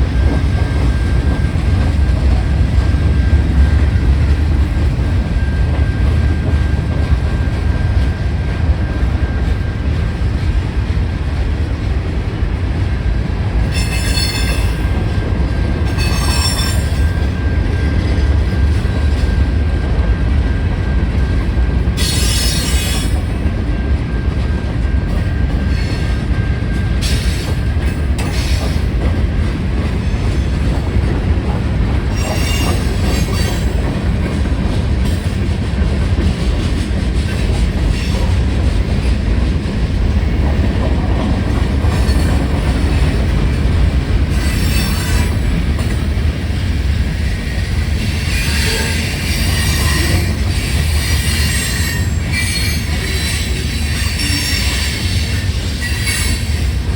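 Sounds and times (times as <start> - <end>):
train wheels rumbling on rail: 0.0 - 56.9
high-pitched wheel squeal: 16.0 - 17.1, 32.1 - 33.7, 48.2 - 56.7.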